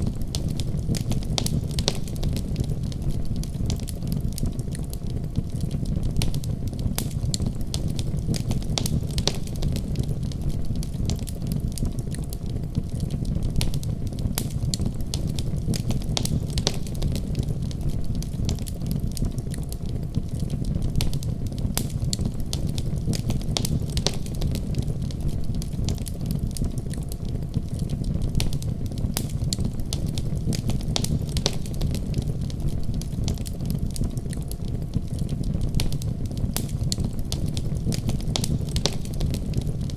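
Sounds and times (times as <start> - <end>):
fire snaps and pops: 0.0 - 39.9
low rumble of flames: 0.0 - 39.9.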